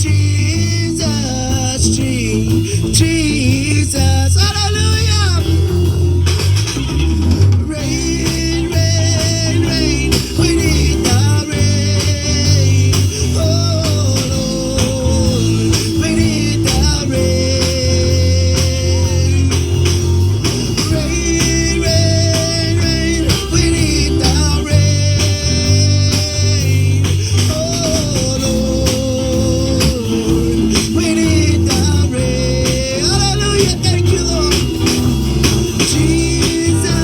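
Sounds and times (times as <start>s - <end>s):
gospel singer holding notes: 0.0s - 6.2s, 7.6s - 37.0s
band with steady beat: 0.0s - 37.0s.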